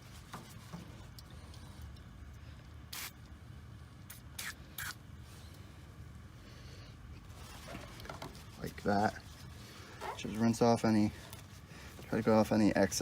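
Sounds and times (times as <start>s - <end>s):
aerosol spray hissing: 2.9s - 3.1s.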